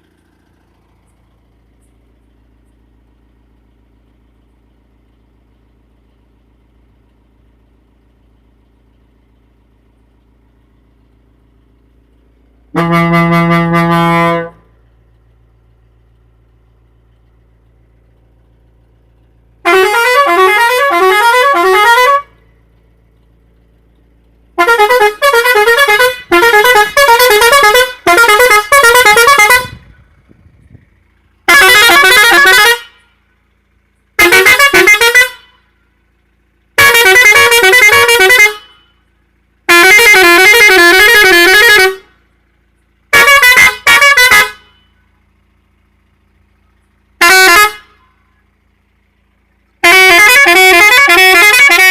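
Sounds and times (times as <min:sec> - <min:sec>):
musical air horn blasts: 0:12.7 - 0:14.8, 0:19.6 - 0:22.4, 0:24.6 - 0:30.3, 0:31.4 - 0:33.2, 0:34.2 - 0:35.8, 0:36.7 - 0:39.0, 0:39.6 - 0:42.2, 0:43.1 - 0:45.0, 0:47.2 - 0:48.2, 0:49.8 - 0:51.9.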